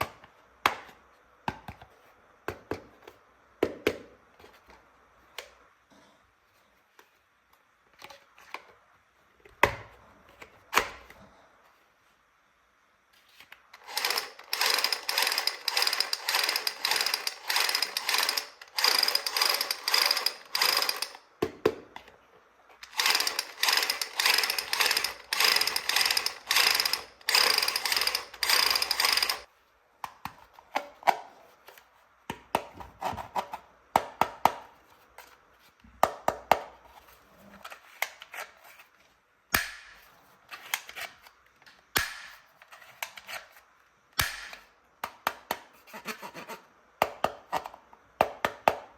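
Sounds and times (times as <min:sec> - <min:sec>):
toy rifle mechanism rattling: 0:13.8 - 0:21.2, 0:22.8 - 0:29.5.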